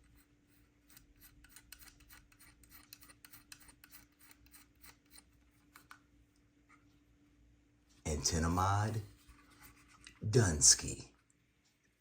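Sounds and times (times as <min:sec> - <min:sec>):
faint steady hum: 0:00.0 - 0:12.0
small cap clicking and scraping: 0:00.9 - 0:06.0.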